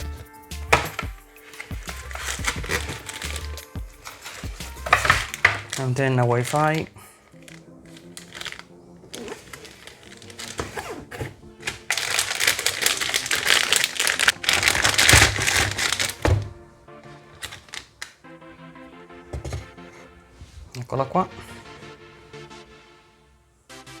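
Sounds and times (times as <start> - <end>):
background music: 0.0 - 24.0
plastic packaging crinkling: 0.7 - 18.2.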